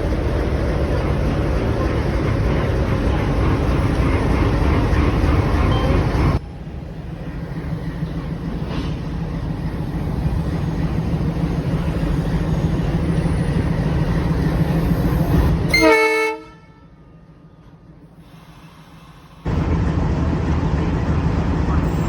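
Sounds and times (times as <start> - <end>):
diesel locomotive idling: 0.0 - 22.0
locomotive horn blast: 15.7 - 17.2.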